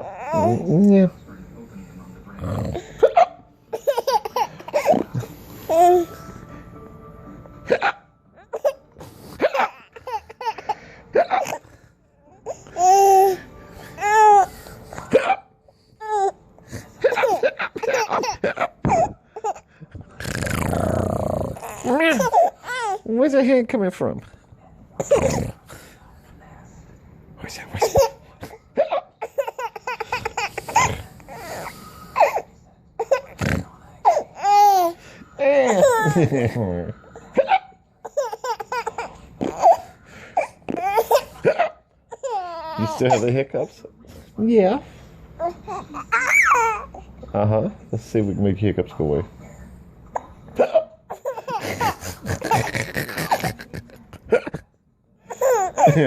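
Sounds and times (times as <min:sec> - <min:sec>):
baby giggling: 0:03.1 - 0:06.0, 0:09.4 - 0:11.6, 0:17.0 - 0:19.6, 0:21.6 - 0:23.0, 0:29.2 - 0:31.0, 0:38.0 - 0:39.9, 0:50.6 - 0:54.6.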